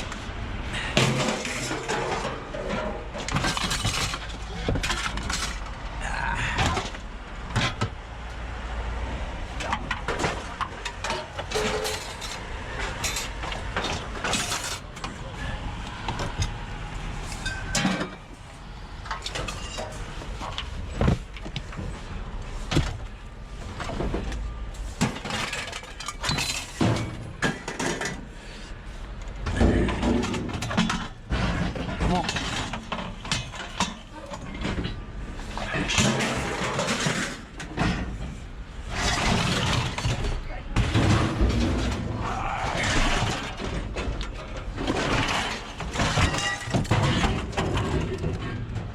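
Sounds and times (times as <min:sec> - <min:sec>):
scrap metal clanking and scraping: 0:00.0 - 0:08.0, 0:09.4 - 0:48.9.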